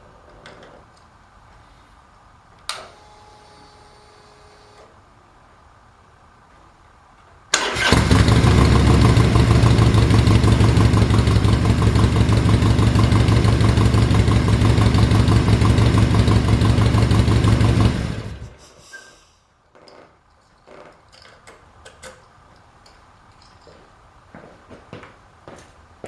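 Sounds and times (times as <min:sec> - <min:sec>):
motorcycle engine idling: 0:07.7 - 0:18.5.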